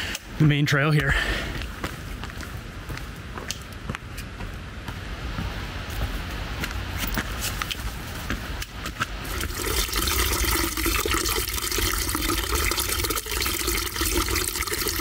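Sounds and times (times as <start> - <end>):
creek water rushing: 9.2 - 15.0.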